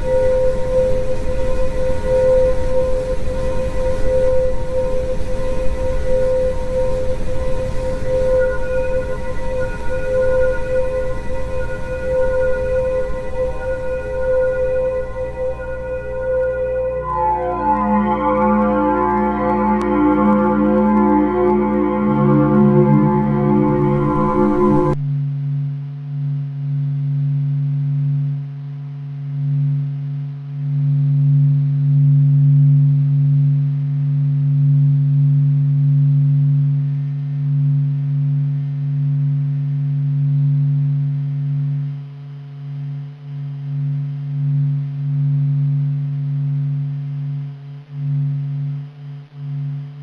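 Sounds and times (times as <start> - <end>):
low drone with higher overtones: 0.0 - 25.0
rich many-toned sound: 0.0 - 25.0.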